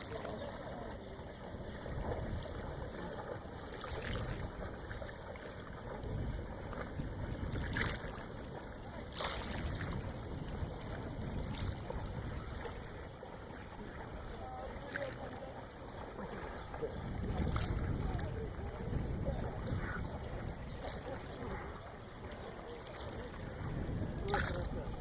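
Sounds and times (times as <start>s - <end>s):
waves washing on pebbles: 0.0s - 1.1s, 2.0s - 8.2s, 8.9s - 12.8s, 16.6s - 21.7s, 22.7s - 25.0s.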